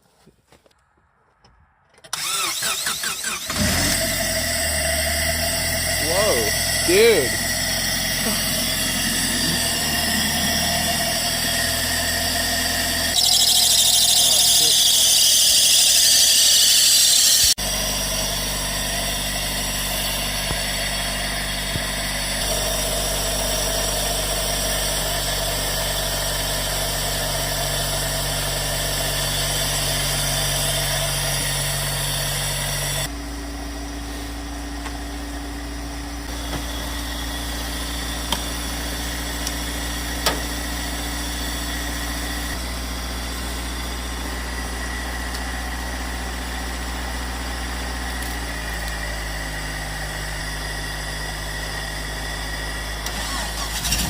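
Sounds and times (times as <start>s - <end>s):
car engine idling: 2.1s - 54.0s.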